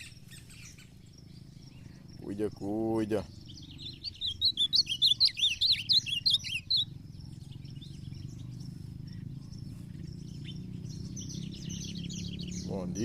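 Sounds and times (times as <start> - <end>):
bird warbling song: 0.0 - 13.0
faint bird chirps: 0.0 - 13.0
steady low hum: 0.0 - 13.0.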